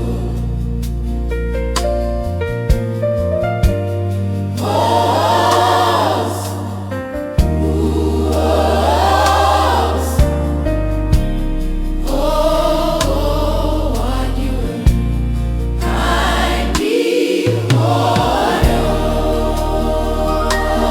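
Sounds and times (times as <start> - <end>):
choir singing: 0.0 - 0.8, 4.5 - 11.0, 12.0 - 20.9
keyboard chords: 17.8 - 20.9
sustained bass notes: 17.9 - 20.9.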